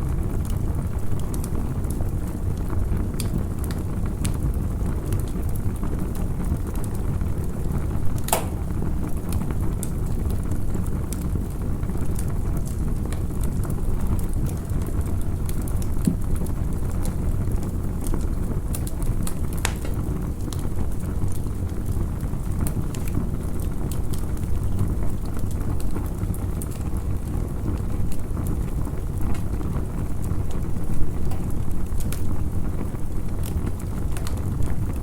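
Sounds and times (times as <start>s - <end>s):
campfire flames rumbling: 0.0s - 35.0s
fire crackles: 0.0s - 35.0s
sharp fire pops: 8.1s - 9.5s, 18.7s - 20.6s, 30.3s - 35.0s.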